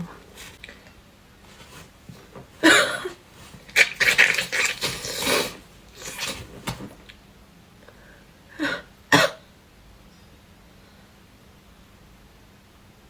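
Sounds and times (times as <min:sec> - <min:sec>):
person sneezing and sniffing: 0:02.6 - 0:06.6.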